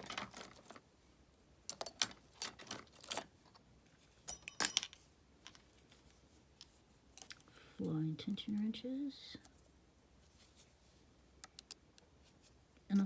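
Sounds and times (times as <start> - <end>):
jangling metal rattle: 4.3 - 5.0.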